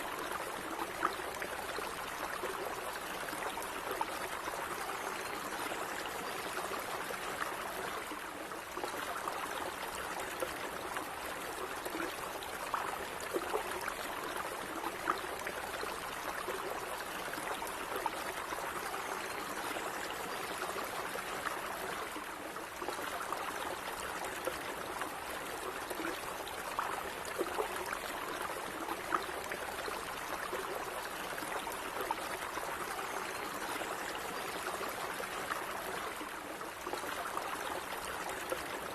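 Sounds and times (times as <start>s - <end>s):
stream water babbling: 0.0s - 38.9s.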